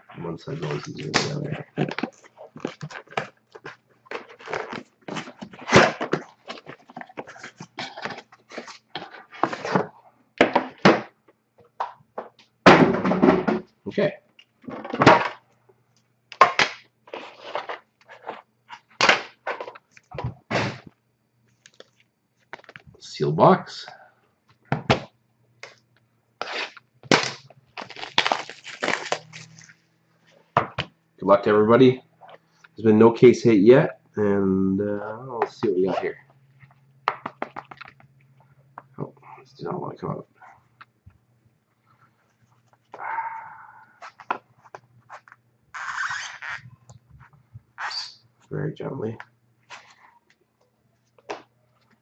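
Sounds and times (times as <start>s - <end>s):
packaging crinkling and ripping: 0.6s - 8.8s, 26.4s - 29.8s.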